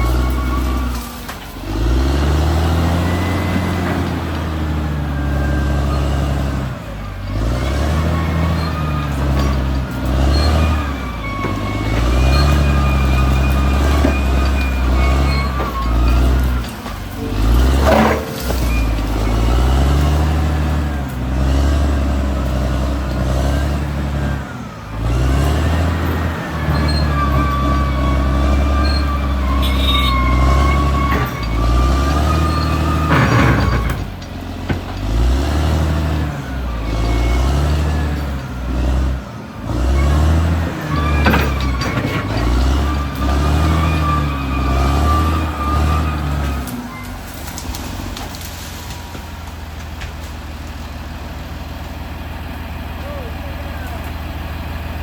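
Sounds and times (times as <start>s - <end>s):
bulldozer diesel engine working: 0.0s - 55.0s
sharp metallic clanks: 11.4s - 19.5s.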